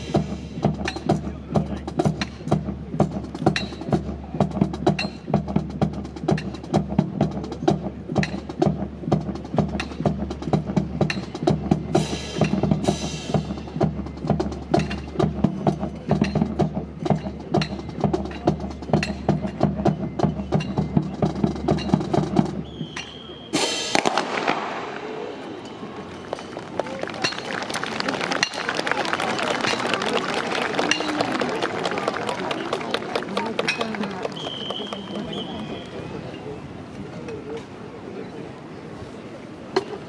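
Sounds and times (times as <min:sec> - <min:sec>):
music: 0:00.0 - 0:24.1.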